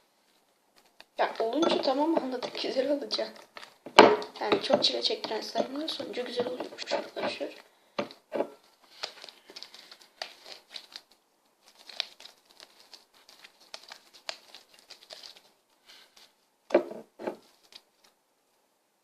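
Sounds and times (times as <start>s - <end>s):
sticky crackles and clicks: 8.9s - 15.5s.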